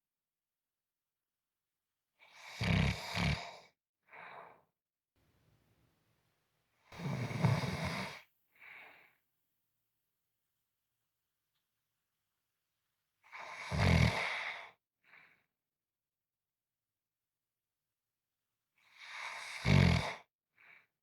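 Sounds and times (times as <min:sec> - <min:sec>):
person snoring: 0:02.4 - 0:03.5, 0:07.0 - 0:08.2.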